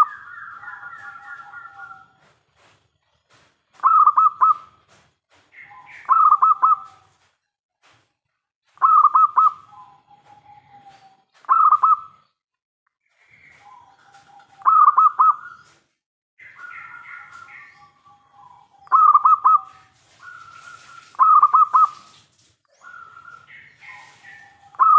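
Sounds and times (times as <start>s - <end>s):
dove cooing: 0.0s - 2.3s, 3.8s - 4.7s, 5.8s - 7.1s, 8.8s - 12.2s, 13.4s - 15.7s, 16.4s - 22.0s, 22.8s - 24.9s.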